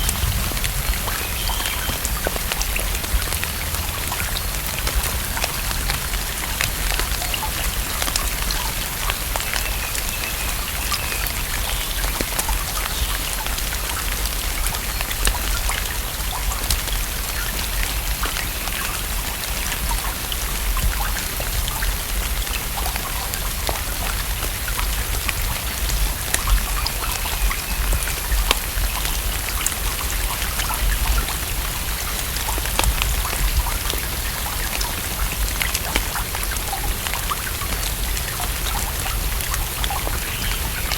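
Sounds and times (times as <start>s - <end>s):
low steady rumble: 0.0s - 6.0s
rain falling on a lake: 0.0s - 40.9s.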